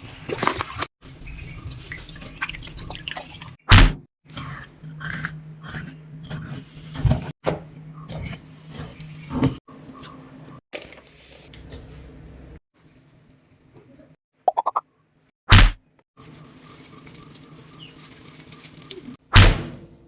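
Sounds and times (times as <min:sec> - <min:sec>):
loud thump: 0:19.4 - 0:19.8.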